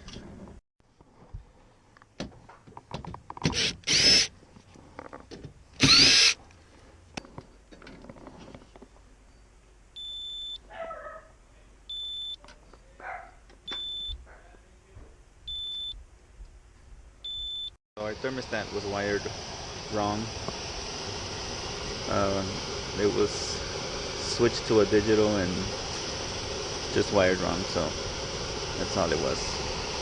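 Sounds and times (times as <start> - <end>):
cordless drill whining: 3.4 - 4.3, 5.8 - 6.4
short bark-like sounds: 10.7 - 11.3, 13.0 - 13.4.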